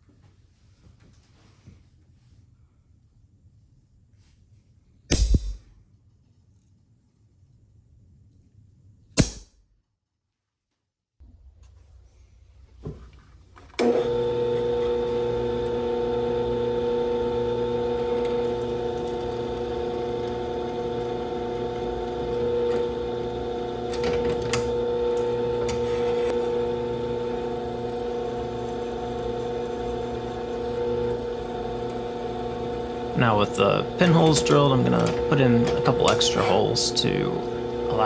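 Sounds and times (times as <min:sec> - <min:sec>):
electric drill drilling steel: 0:13.8 - 0:38.0.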